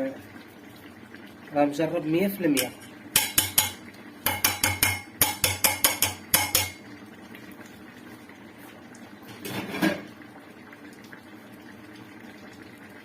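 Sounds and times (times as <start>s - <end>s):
metal utensil clinking against pot: 2.6s - 6.8s.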